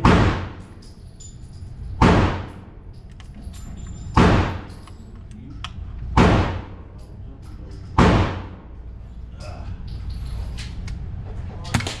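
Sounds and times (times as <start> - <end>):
pistol shots echoing: 0.0 - 0.7, 2.0 - 2.6.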